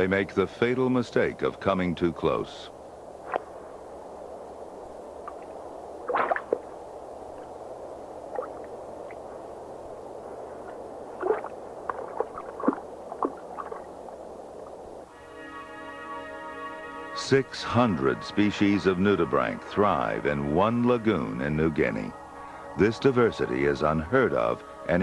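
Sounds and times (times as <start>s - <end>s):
steady watery hiss: 0.0s - 25.0s
sharp gulping sounds: 6.1s - 6.6s, 11.2s - 13.9s
underwater gurgling and bubbling: 11.2s - 14.9s.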